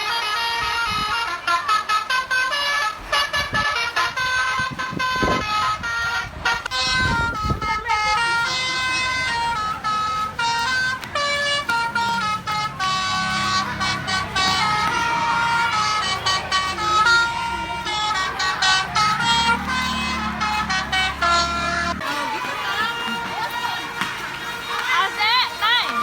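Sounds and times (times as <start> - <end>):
bus horn playing a melody: 0.0 - 26.0.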